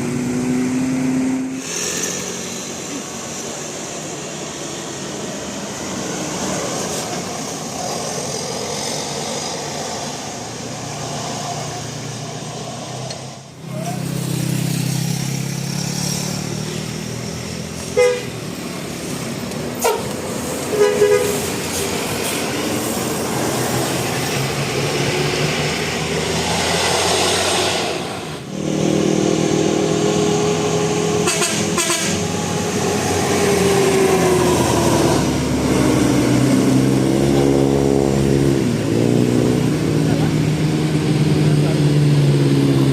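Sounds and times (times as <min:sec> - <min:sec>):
bus engine running: 0:00.0 - 0:42.9
multi-tone bus horn playing tune: 0:17.9 - 0:18.4, 0:19.8 - 0:21.6, 0:31.0 - 0:33.4.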